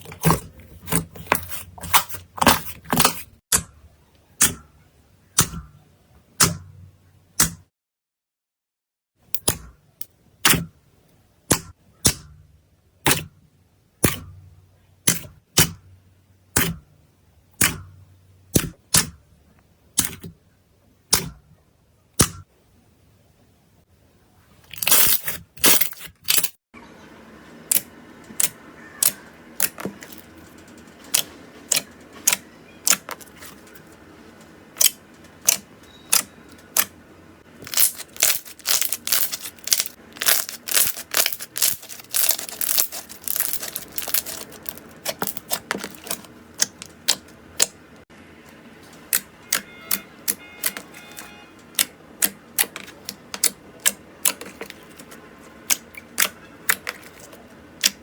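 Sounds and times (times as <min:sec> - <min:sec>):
crunchy slime crackling: 0:37.6 - 0:47.7.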